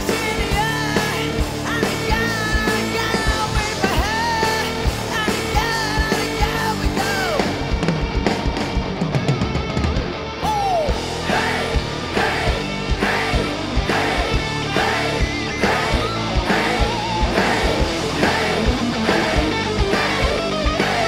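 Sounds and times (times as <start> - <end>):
woman singing: 0.0 - 7.4
drum kit: 0.0 - 21.0
guitar: 0.0 - 21.0.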